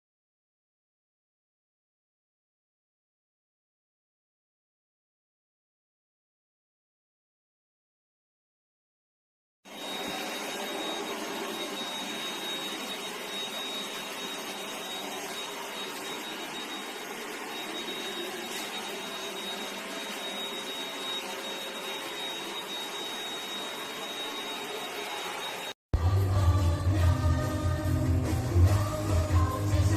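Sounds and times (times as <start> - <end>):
handheld vacuum cleaner running: 9.7 - 25.7.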